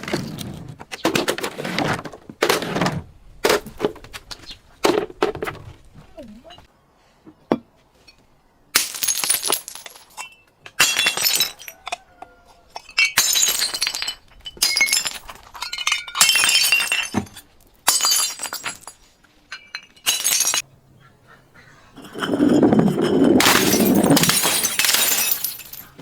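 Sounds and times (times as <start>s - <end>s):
glass breaking and crunching: 23.4s - 26.0s.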